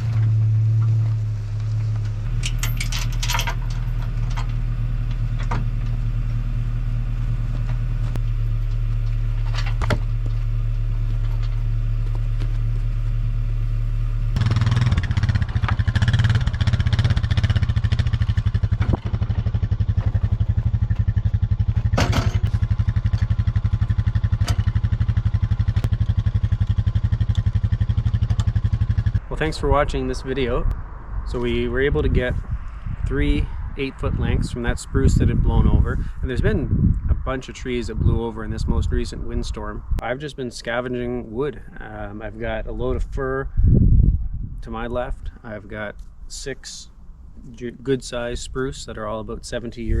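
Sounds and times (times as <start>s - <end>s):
atv engine running: 0.0s - 40.1s
sharp knocks and clanks: 17.5s - 25.0s.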